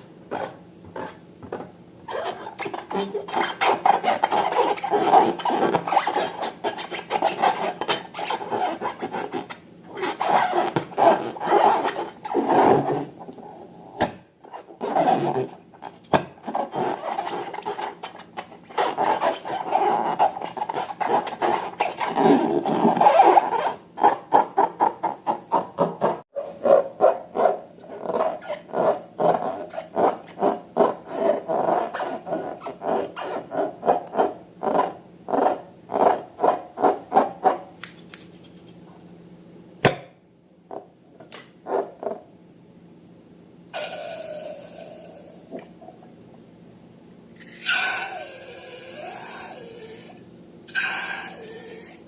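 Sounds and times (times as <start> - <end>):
rubber balloon squeaking: 0.3 - 1.2, 2.1 - 13.2, 14.4 - 37.7, 50.7 - 52.0
sharp click: 37.8 - 38.6.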